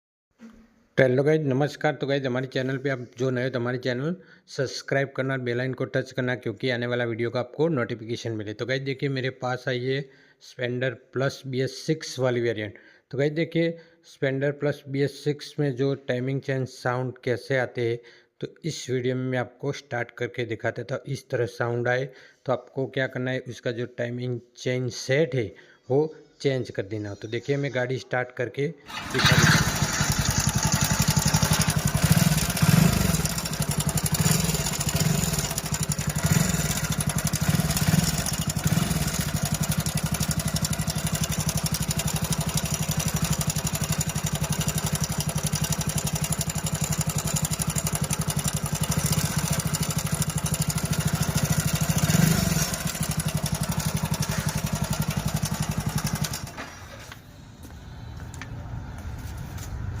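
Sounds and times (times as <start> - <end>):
motorcycle engine revving: 28.9 - 57.2.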